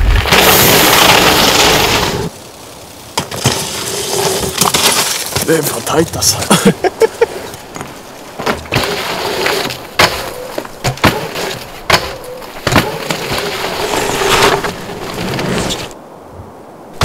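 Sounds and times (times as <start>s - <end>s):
tyres hissing on dirt: 0.0s - 16.0s
bike knocking over bumps: 3.2s - 5.6s, 7.7s - 15.2s.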